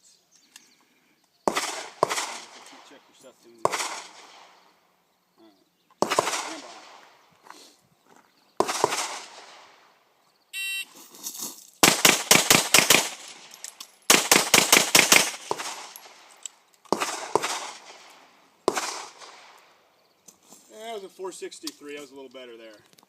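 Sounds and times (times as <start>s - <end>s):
pistol shots: 1.5s - 3.0s, 3.6s - 4.6s, 6.0s - 7.2s, 8.6s - 9.9s, 11.8s - 16.3s, 16.9s - 19.7s
shot timer beep: 10.6s - 10.9s.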